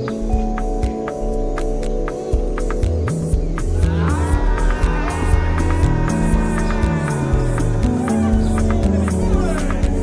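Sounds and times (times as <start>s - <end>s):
held bass notes: 2.8s - 10.0s
rising synth line: 3.8s - 9.0s.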